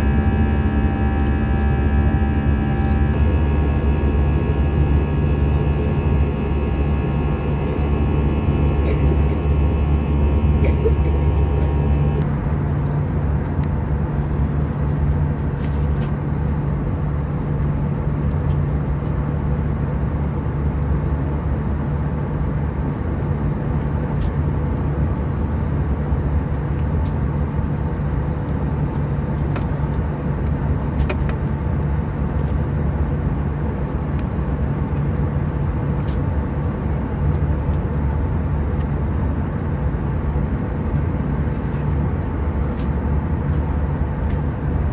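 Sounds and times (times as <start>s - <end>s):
aircraft cabin drone: 0.0s - 44.9s.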